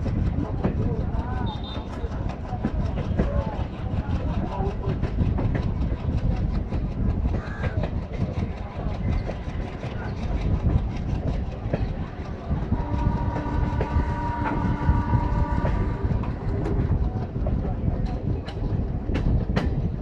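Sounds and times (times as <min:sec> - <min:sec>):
diesel locomotive engine chugging: 0:00.0 - 0:20.0
locomotive horn blast: 0:01.4 - 0:01.9, 0:12.7 - 0:17.1.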